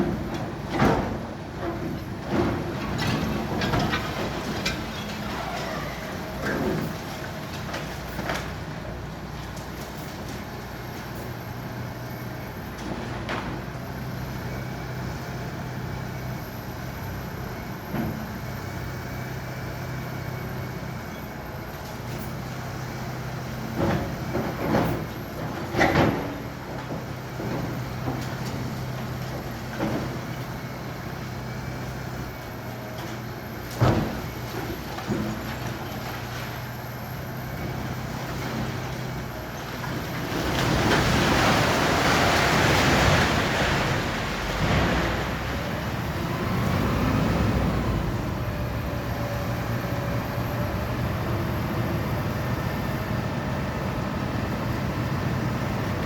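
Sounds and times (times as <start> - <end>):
diesel engine running: 10.4 - 56.0.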